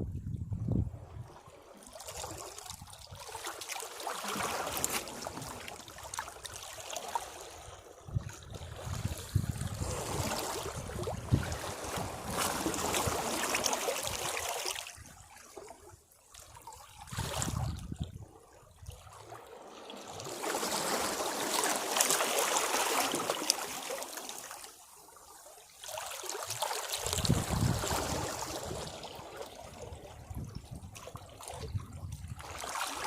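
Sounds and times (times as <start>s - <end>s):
sea waves washing against rocks: 9.0s - 14.5s, 20.2s - 24.6s, 27.0s - 29.4s.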